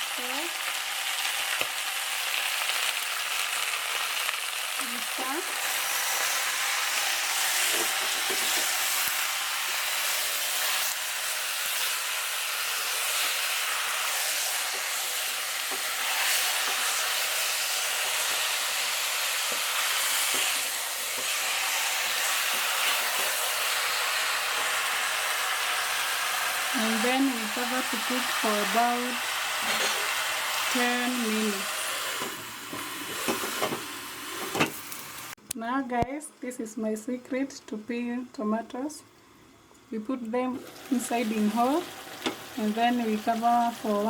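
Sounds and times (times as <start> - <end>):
chicken sizzling in hot oil: 0.0 - 35.4, 40.6 - 44.0.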